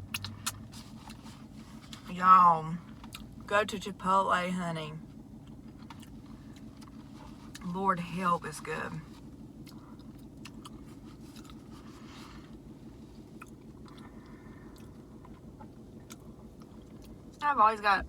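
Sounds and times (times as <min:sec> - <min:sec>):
mouth chewing food: 0:00.0 - 0:02.1, 0:02.9 - 0:03.4, 0:05.4 - 0:07.7, 0:09.2 - 0:17.4
low hum: 0:00.0 - 0:18.0.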